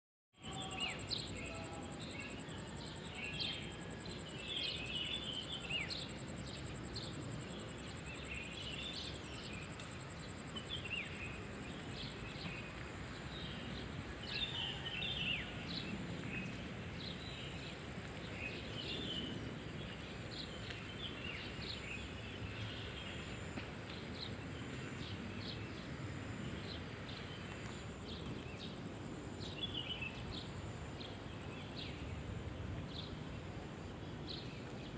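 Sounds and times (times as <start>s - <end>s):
birds chirping: 0.4s - 12.8s
crickets trilling: 0.4s - 14.9s
low outdoor hum: 0.4s - 34.9s.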